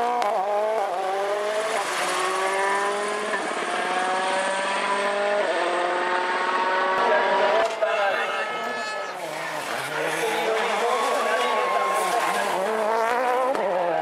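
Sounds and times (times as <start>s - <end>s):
rally car engine accelerating: 0.0s - 7.8s, 9.0s - 14.0s.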